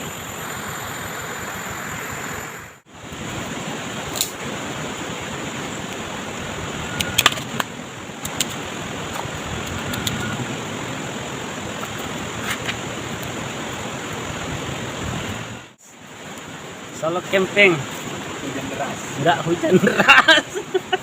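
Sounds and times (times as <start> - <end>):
sharp clicks: 7.0 - 8.6.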